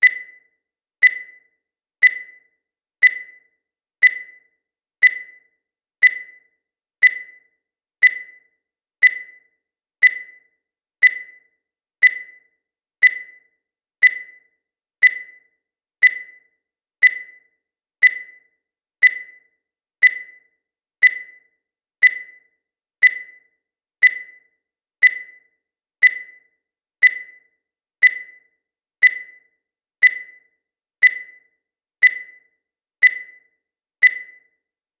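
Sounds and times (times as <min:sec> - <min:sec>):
countdown timer beeping: 0:00.0 - 0:34.7.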